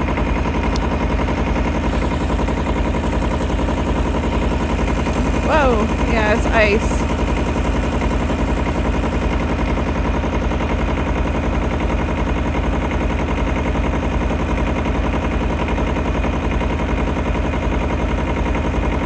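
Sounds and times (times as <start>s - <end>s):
tractor engine running: 0.0s - 14.3s.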